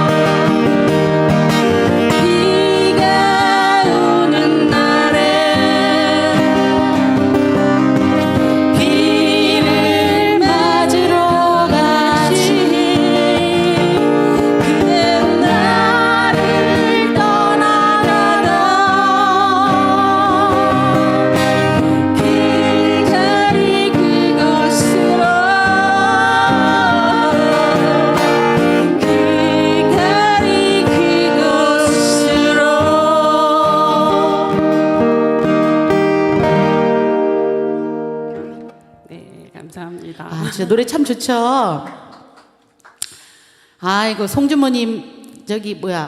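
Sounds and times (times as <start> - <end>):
person singing with vibrato: 0.0 - 35.2
acoustic guitar: 0.0 - 44.3.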